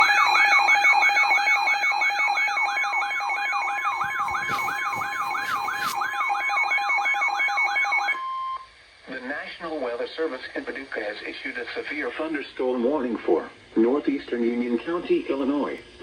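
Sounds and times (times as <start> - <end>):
electronic siren yelp: 0.0 - 8.2.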